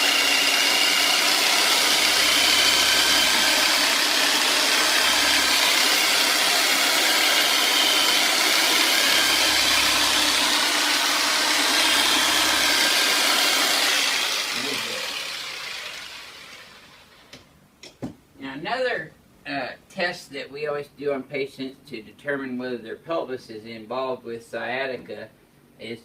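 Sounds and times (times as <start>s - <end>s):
percussion massager motor buzzing: 0.0s - 17.4s.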